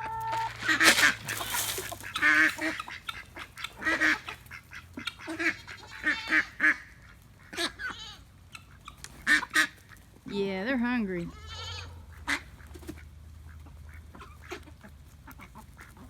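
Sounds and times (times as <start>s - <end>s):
chickens squawking and clucking: 0.0s - 10.4s, 11.2s - 16.0s.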